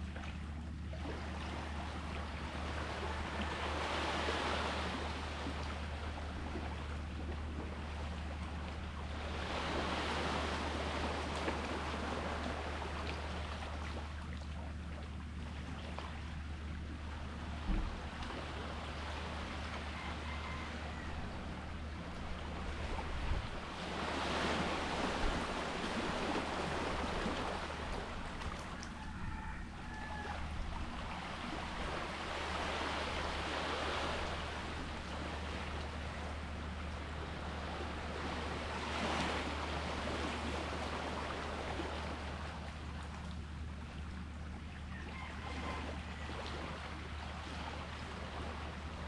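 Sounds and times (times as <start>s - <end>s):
sea waves washing on shore: 0.0s - 49.0s.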